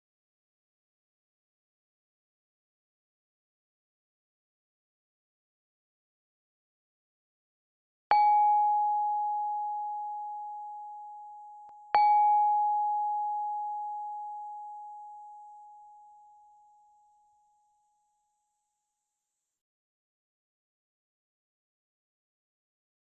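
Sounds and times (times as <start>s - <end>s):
struck bell chime tones: 8.1s - 18.4s.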